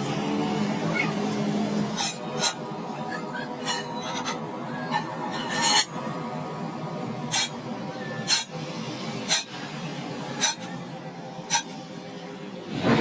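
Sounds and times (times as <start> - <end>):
workshop background noise: 0.0 - 6.2, 7.3 - 11.9
hand tool scraping metal: 2.0 - 2.6.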